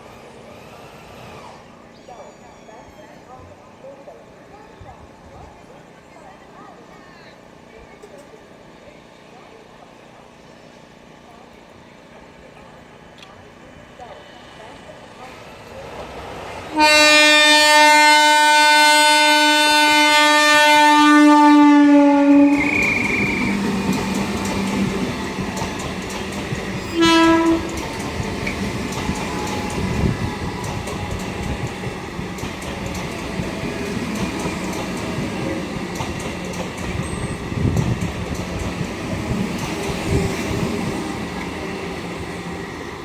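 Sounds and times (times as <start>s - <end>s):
steady train hum: 0.0s - 43.0s
loud train horn blast: 16.7s - 23.9s, 26.8s - 27.8s
train wheels clattering over rail joints: 22.6s - 42.1s.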